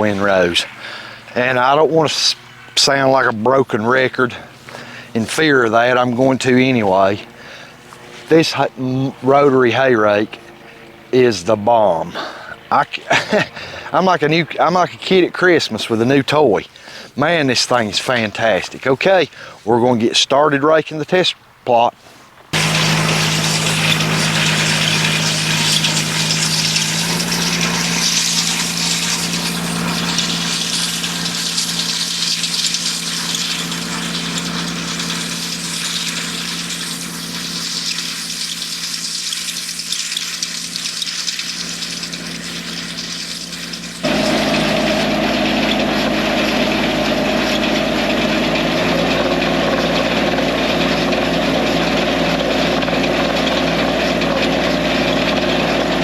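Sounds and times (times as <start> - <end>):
steady hiss: 0.0 - 3.2, 22.0 - 48.1
tractor engine running: 0.0 - 16.7, 22.5 - 56.0.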